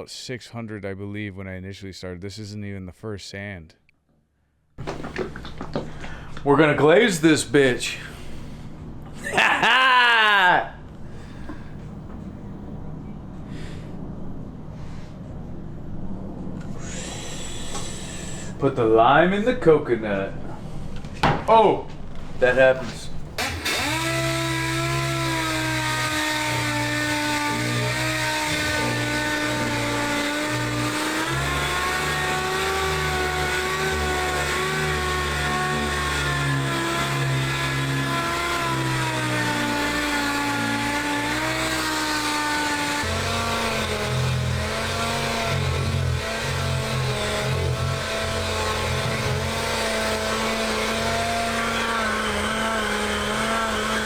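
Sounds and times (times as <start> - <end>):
electric sander motor running: 22.6 - 54.0.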